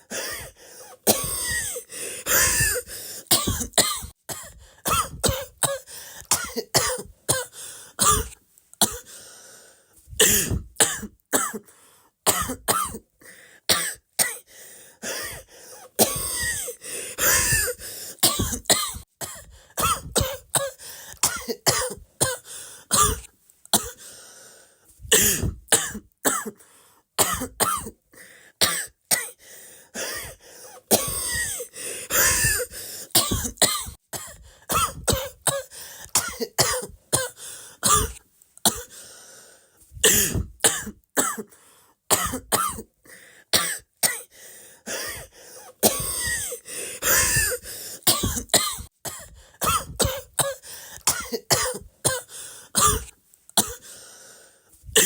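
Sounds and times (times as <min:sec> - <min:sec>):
short coughs: 0:00.4 - 0:09.1, 0:10.2 - 0:11.7, 0:16.0 - 0:22.4, 0:23.0 - 0:24.0, 0:25.1 - 0:26.6, 0:30.2 - 0:38.9, 0:40.0 - 0:41.5, 0:42.1 - 0:42.9, 0:45.1 - 0:53.9.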